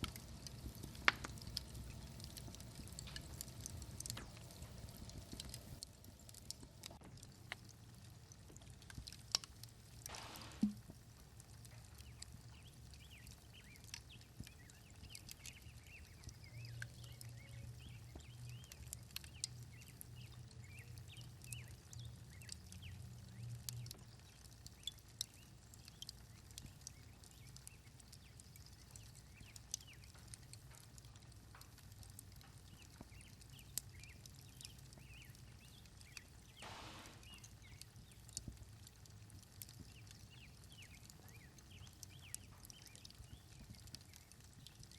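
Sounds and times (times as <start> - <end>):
low steady rumble: 0.0 - 24.7
sharp clicks and taps: 10.5 - 10.9
small birds chirping: 11.4 - 44.9.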